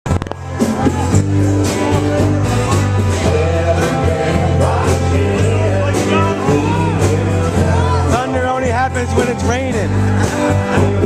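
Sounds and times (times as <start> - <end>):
steady bass line: 0.0 - 11.0
person singing: 0.4 - 11.0.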